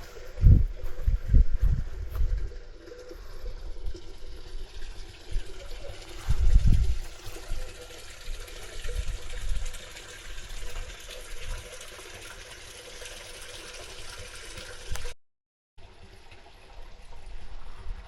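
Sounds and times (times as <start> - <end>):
wind rumble on microphone: 0.0 - 9.9
running water rushing: 0.0 - 15.2.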